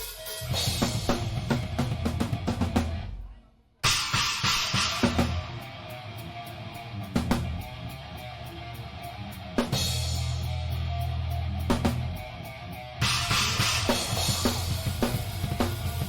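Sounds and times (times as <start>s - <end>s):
live rock band playing: 0.0s - 3.0s, 4.2s - 16.0s
drum and crash cymbal hits: 0.0s - 3.1s, 3.8s - 6.0s, 13.0s - 16.0s.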